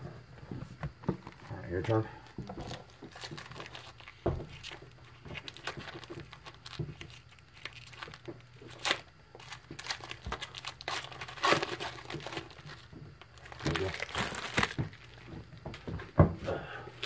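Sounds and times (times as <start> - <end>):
cards rustling: 2.6 - 15.4
foil wrapper crinkling and tearing: 2.6 - 15.5.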